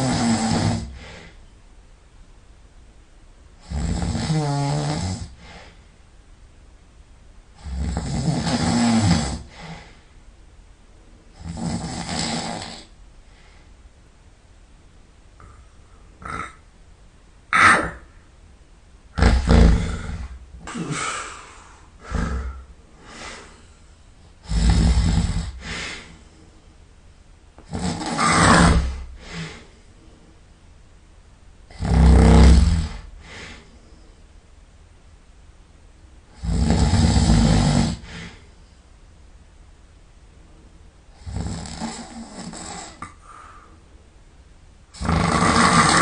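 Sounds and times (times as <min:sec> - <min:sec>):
person snoring loudly: 0:00.0 - 0:01.2, 0:03.6 - 0:05.4, 0:07.6 - 0:09.7, 0:11.4 - 0:12.9, 0:19.1 - 0:21.4, 0:22.0 - 0:23.4, 0:24.4 - 0:25.9, 0:27.7 - 0:29.6, 0:31.7 - 0:33.5, 0:36.3 - 0:38.4, 0:41.2 - 0:43.1, 0:44.9 - 0:46.0
soft breaths: 0:05.2 - 0:06.2, 0:09.4 - 0:10.3, 0:12.7 - 0:14.0, 0:19.2 - 0:27.0, 0:28.6 - 0:30.6, 0:32.9 - 0:34.5, 0:37.4 - 0:39.1, 0:41.8 - 0:44.2.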